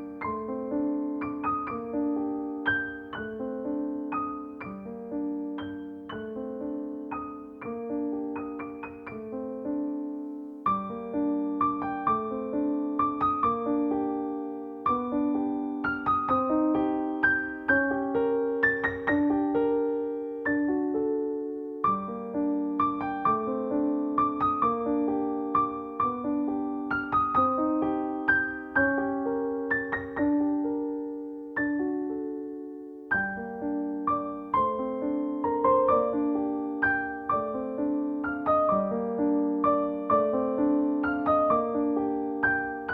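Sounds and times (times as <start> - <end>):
soft solo piano music: 0.0 - 42.9.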